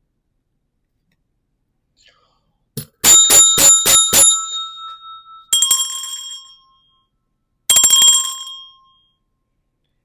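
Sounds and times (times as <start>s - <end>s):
small metal bell ringing: 2.8s - 9.2s.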